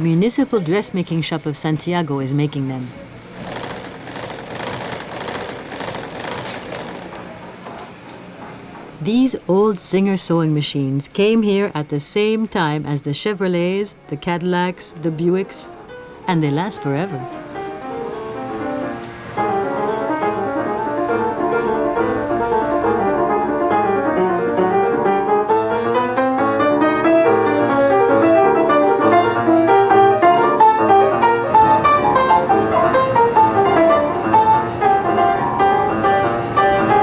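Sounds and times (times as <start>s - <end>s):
piano music with fast runs: 15.6s - 37.0s.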